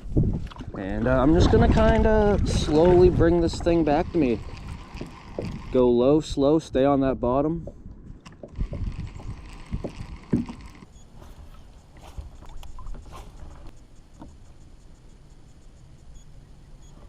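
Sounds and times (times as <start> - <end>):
steady hiss: 13.1 - 17.0.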